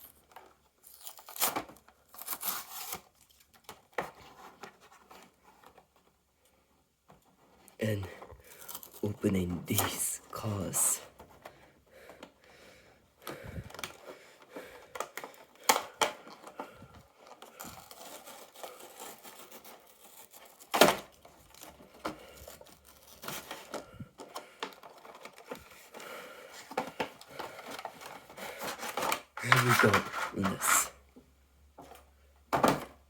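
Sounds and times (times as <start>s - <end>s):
packaging rustling and clicking: 7.2s - 9.0s, 13.2s - 30.8s.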